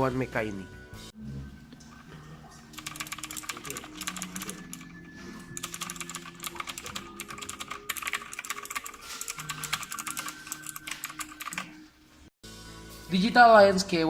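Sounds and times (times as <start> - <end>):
mechanical keyboard typing: 2.8 - 4.9, 5.6 - 11.7.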